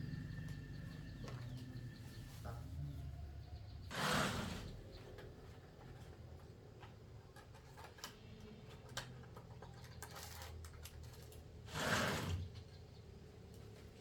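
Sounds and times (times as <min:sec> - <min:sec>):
small objects clicking and rustling: 0:07.3 - 0:11.5.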